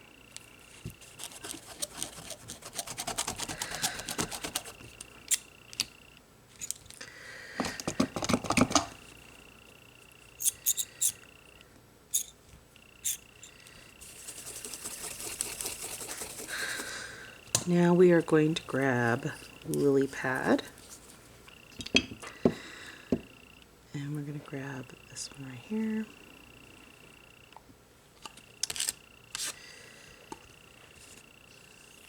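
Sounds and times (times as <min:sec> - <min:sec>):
scraper rasping on metal plate: 0:01.0 - 0:04.8
faint high whine: 0:08.9 - 0:32.0.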